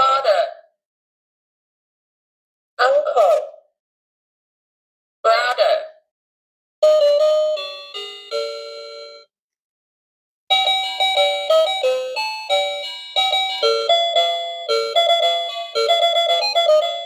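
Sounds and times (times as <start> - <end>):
tinkly electronic tune: 6.8 - 9.3, 10.5 - 17.0
toy telephone chime: 6.8 - 9.3, 10.5 - 17.0.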